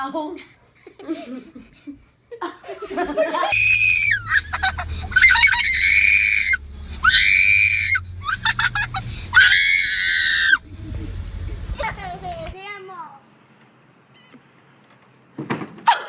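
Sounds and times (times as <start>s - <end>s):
high-pitched screaming: 3.5s - 11.9s.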